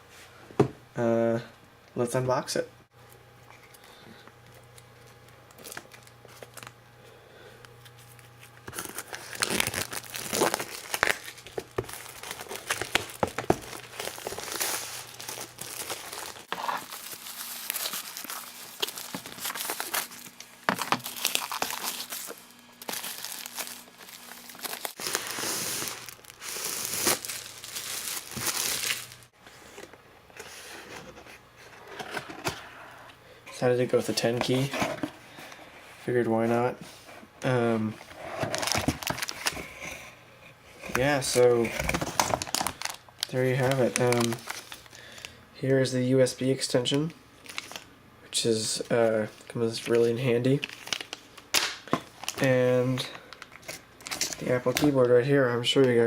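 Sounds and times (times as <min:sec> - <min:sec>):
plastic packaging crinkling: 0:05.0 - 0:06.8, 0:07.8 - 0:29.9, 0:38.1 - 0:39.8, 0:40.9 - 0:45.3, 0:47.4 - 0:47.9, 0:49.3 - 0:55.2.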